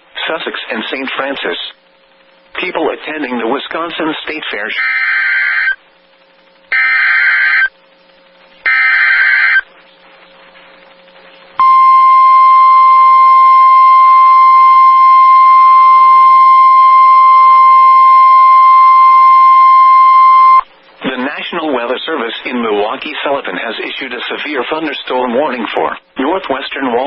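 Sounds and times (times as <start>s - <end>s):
steady warning alarm tone: 4.8s - 5.8s, 6.7s - 7.7s, 8.7s - 9.6s, 11.6s - 20.6s.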